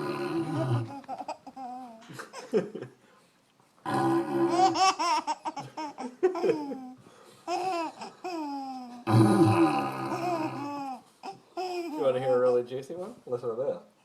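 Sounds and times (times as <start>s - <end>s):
young child giggling: 0.9s - 3.0s, 4.7s - 9.0s.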